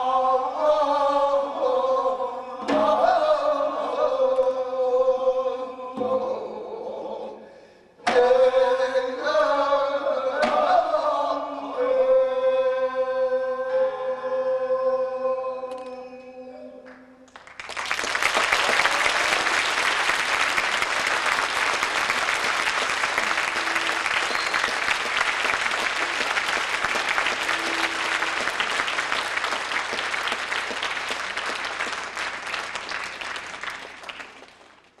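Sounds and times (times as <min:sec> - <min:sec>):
audience applause: 0:17.3 - 0:35.0.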